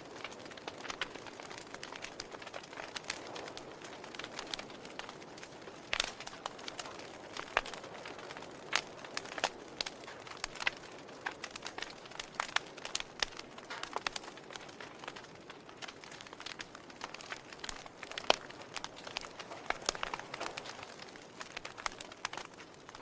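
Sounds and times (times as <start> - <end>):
fire crackling: 0.0 - 23.0.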